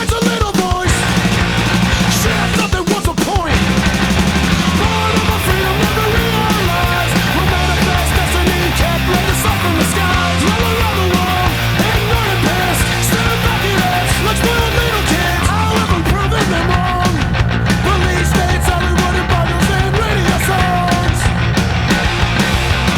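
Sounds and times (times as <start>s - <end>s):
punk rock music: 0.0s - 22.9s
person singing: 4.7s - 21.5s.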